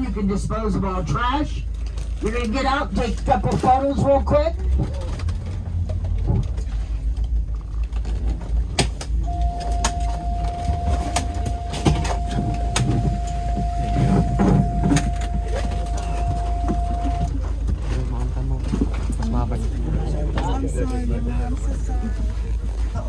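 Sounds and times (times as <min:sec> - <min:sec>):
vehicle engine idling: 0:09.2 - 0:19.8
steady electronic tone: 0:09.3 - 0:17.3.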